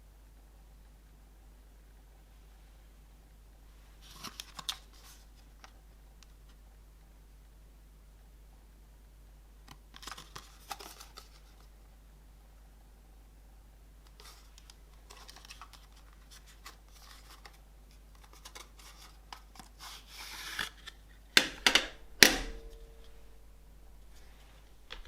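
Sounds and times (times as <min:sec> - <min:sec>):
cassette packaging rustling: 0:04.0 - 0:05.8, 0:09.7 - 0:11.7, 0:14.1 - 0:23.4.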